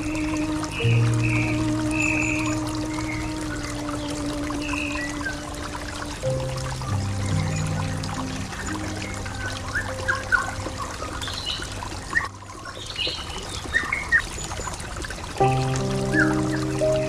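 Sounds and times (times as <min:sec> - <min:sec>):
birds chirping: 0:00.0 - 0:17.0
soft sustained music tones: 0:00.0 - 0:17.0
water trickling: 0:00.0 - 0:17.0.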